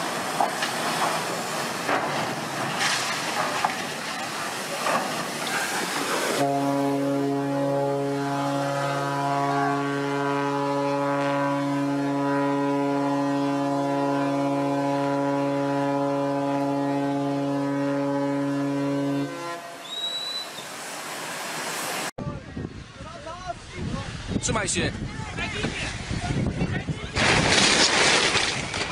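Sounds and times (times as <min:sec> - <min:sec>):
ship's horn blast: 0:05.6 - 0:20.6.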